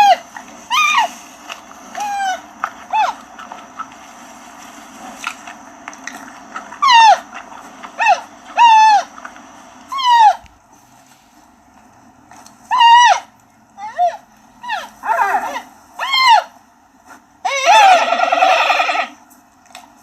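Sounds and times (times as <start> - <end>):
panda high-pitched calls: 14.7 - 16.5, 17.4 - 19.2.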